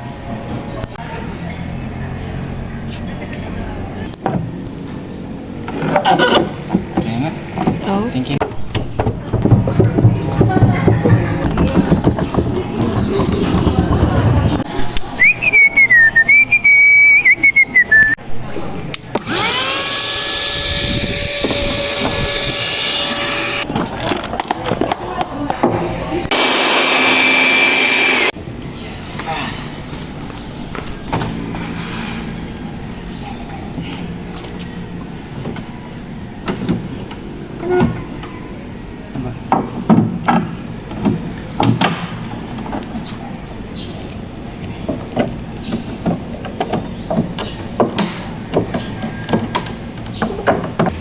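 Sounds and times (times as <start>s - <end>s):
irregular knocks and thuds: 6.7s - 14.7s
person whistling a tune: 15.2s - 18.2s
electric motor whining: 19.2s - 23.7s, 26.3s - 28.4s.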